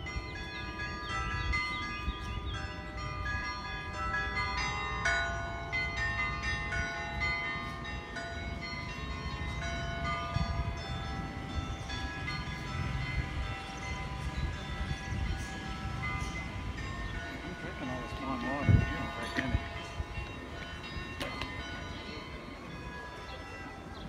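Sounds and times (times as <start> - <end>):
church bells ringing: 0.0 - 24.0.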